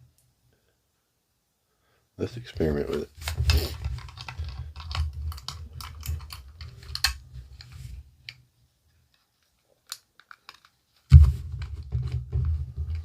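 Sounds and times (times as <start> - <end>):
plastic parts clicking and knocking: 2.9 - 8.4, 9.1 - 13.0.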